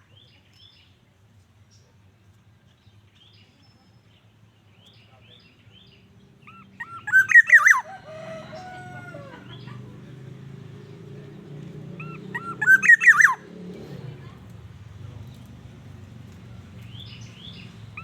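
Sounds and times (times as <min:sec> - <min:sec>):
bird fluty whistled notes: 0:12.0 - 0:13.4.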